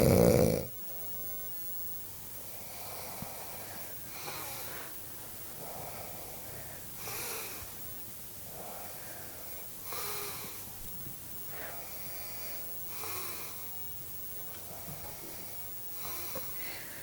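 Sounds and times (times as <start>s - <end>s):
man snoring: 0.0s - 0.7s
soft breaths: 2.4s - 17.0s.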